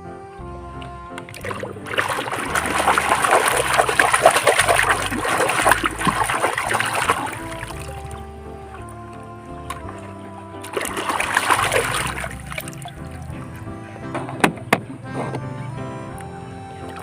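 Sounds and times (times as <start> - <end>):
soft background music: 0.0 - 17.0
water splashing and spraying: 1.3 - 8.3, 10.6 - 13.3.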